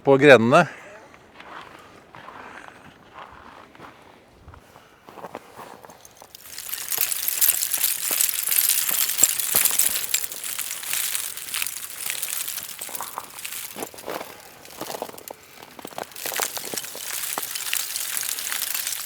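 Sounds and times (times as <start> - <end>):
ice crackling and tinkling: 6.0 - 19.0.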